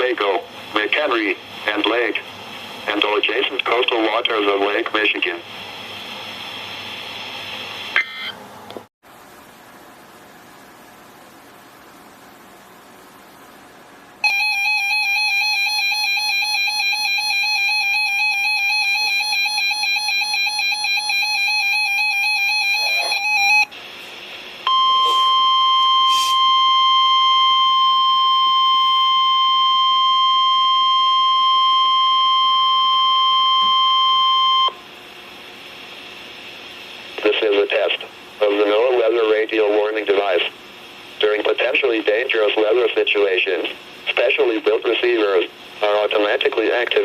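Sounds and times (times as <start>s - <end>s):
steady warning alarm tone: 14.2s - 23.7s, 24.6s - 34.8s
warbling electronic alarm tone: 14.2s - 23.7s, 24.7s - 34.8s.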